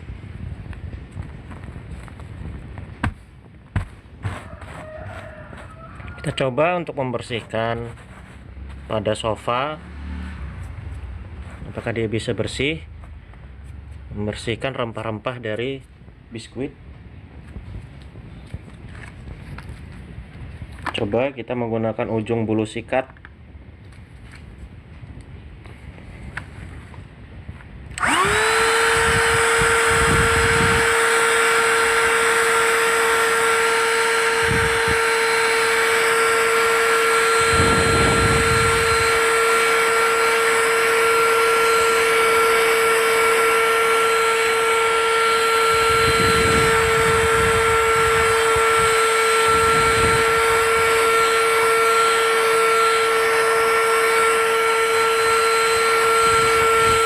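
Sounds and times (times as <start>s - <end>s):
vacuum nozzle rushing: 27.9s - 57.0s
vacuum cleaner motor whine: 28.0s - 57.0s.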